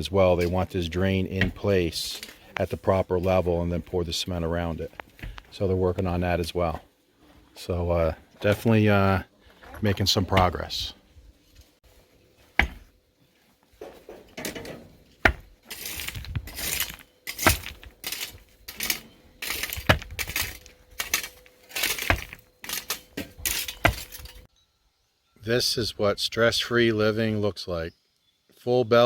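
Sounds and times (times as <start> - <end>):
scraping and crunching gravel: 0.0 - 24.5
metal tool striking rock: 12.6 - 12.9, 14.4 - 24.5.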